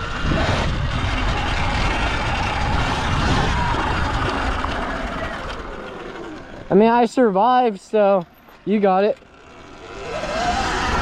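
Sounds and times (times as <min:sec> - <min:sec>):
rushing wind noise: 0:00.0 - 0:05.8
faint electric motor whine: 0:07.9 - 0:11.0.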